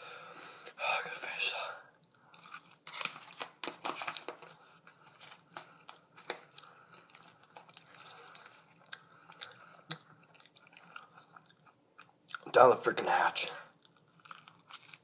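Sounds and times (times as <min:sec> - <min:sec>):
person chewing fries: 0:02.1 - 0:12.5, 0:13.7 - 0:15.0.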